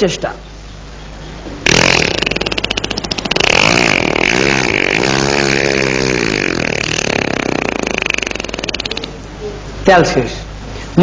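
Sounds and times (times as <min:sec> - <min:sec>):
man imitating motorcycle engine: 0:01.6 - 0:09.2.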